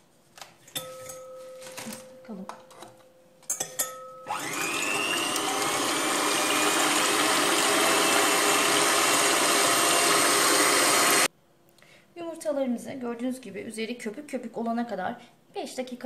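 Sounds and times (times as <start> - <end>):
electric hand mixer whining: 4.3 - 11.3.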